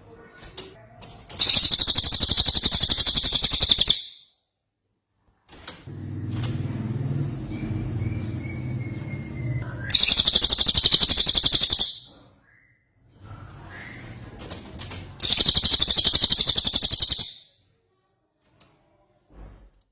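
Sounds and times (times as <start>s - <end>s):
songbird high rapid trills: 1.4s - 4.2s, 9.9s - 12.1s, 15.2s - 17.5s.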